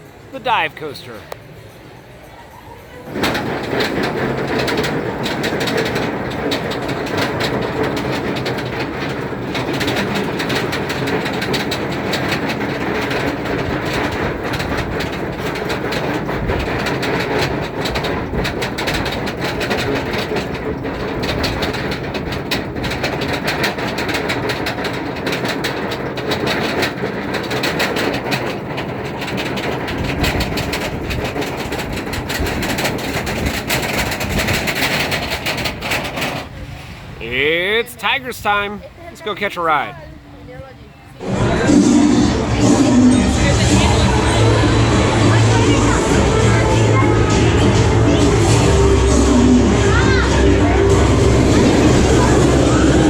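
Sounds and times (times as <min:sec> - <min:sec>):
roller coaster rattling on track: 0:00.0 - 0:53.0
rapid clicking: 0:03.2 - 0:36.5.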